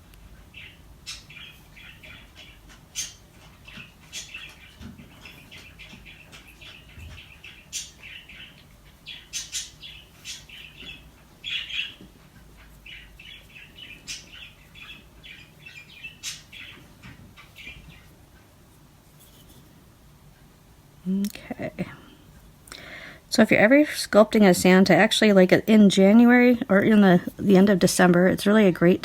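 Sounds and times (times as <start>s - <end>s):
bird chirping and squawking: 0.5s - 18.1s.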